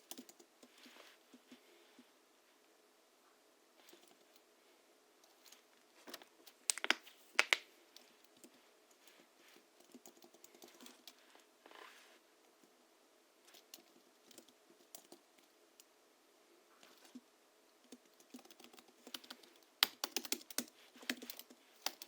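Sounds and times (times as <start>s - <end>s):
slow keyboard typing: 0.0s - 0.8s, 9.8s - 11.2s, 13.5s - 15.5s, 17.9s - 22.0s.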